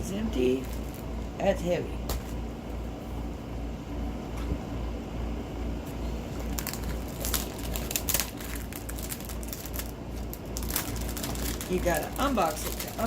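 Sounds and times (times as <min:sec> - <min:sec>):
packaging rustling and crinkling: 0:00.6 - 0:01.1, 0:06.3 - 0:13.0
sharp crackles: 0:06.5 - 0:13.0.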